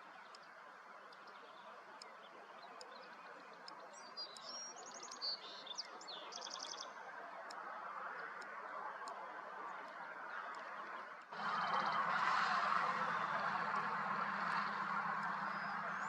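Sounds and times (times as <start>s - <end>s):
eagle piping chatter: 11.3s - 16.0s.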